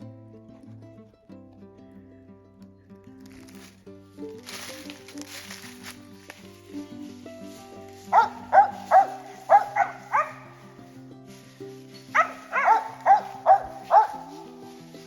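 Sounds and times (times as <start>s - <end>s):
background music: 0.0s - 15.0s
dog barking: 8.1s - 10.8s, 12.1s - 14.7s.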